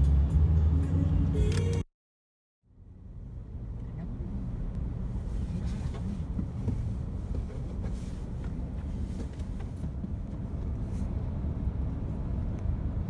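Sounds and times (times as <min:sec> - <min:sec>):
car rumbling on the move: 0:00.0 - 0:01.8, 0:02.7 - 0:13.0.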